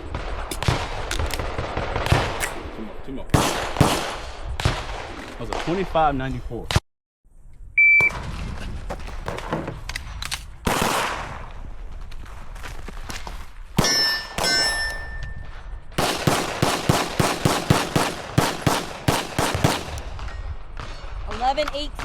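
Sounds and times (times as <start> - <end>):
pistol shots: 0.1 - 2.7, 3.3 - 5.8, 10.3 - 11.4, 13.8 - 14.9, 16.0 - 20.9
steel targets ringing: 13.8 - 15.5.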